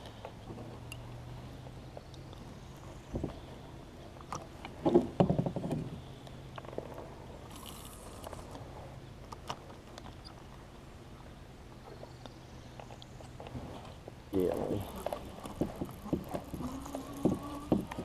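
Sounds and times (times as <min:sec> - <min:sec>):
knocks and thuds on boat: 0:04.8 - 0:05.9, 0:15.1 - 0:18.0.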